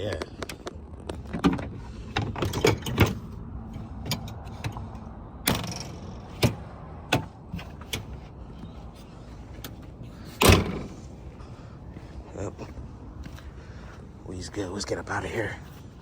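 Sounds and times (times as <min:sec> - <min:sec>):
sharp clicks and knocks: 0:00.0 - 0:08.3
low steady rumble: 0:00.0 - 0:16.0.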